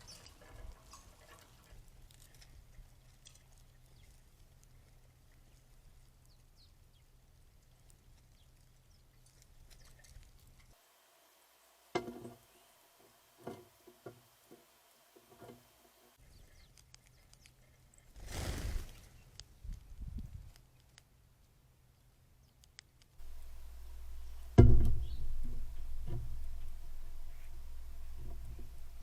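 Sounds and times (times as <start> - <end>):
small birds chirping: 0.0 - 10.8, 15.4 - 29.0
sharp knocks: 24.5 - 26.4.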